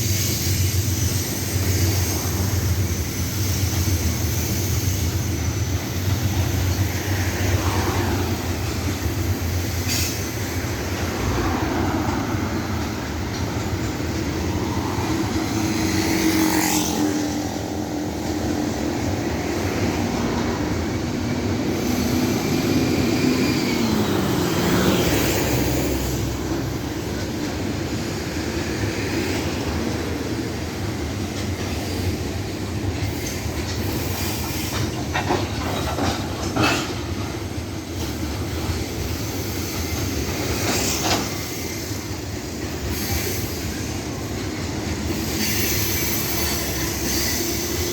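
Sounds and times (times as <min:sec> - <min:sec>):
train wagons rumbling on rails: 0:00.0 - 0:47.9
wheel squeals: 0:45.0 - 0:47.9.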